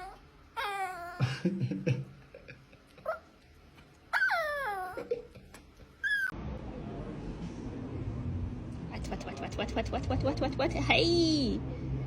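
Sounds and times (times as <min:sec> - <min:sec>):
dog whining: 0:00.0 - 0:01.2, 0:04.1 - 0:05.1, 0:06.0 - 0:06.4
dog yip: 0:04.1 - 0:05.0, 0:06.0 - 0:06.3.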